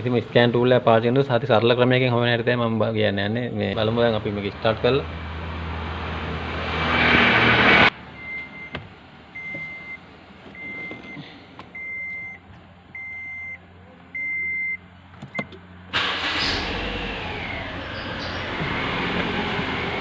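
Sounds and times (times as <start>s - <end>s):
loud rushing noise: 5.5s - 7.9s.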